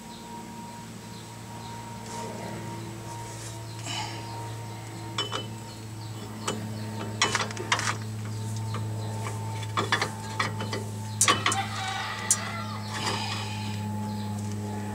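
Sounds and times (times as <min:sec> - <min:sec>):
steady low hum: 0:00.0 - 0:14.9
metal tools clinking: 0:05.2 - 0:05.5.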